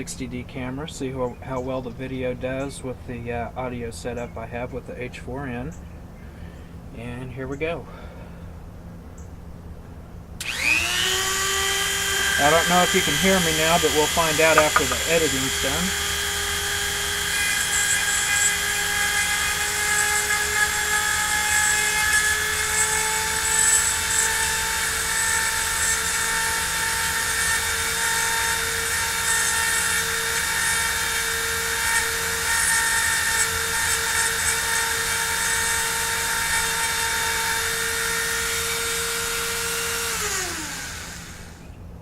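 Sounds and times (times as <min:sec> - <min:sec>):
small motor whining: 0:10.4 - 0:41.7.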